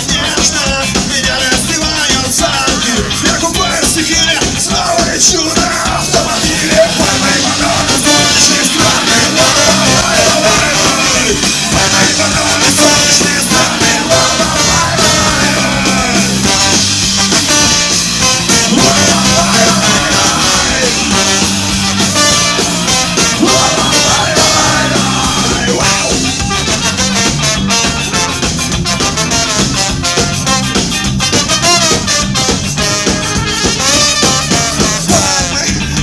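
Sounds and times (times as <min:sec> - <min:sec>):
person singing: 0:00.0 - 0:16.8, 0:18.2 - 0:21.5, 0:23.1 - 0:26.6, 0:34.9 - 0:36.0
punk rock band music: 0:00.0 - 0:36.0.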